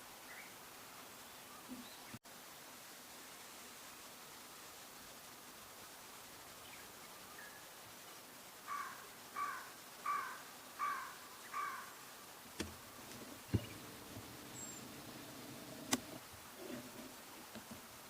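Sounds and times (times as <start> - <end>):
crow cawing: 8.7 - 12.0
sharp clicks: 12.6 - 16.2.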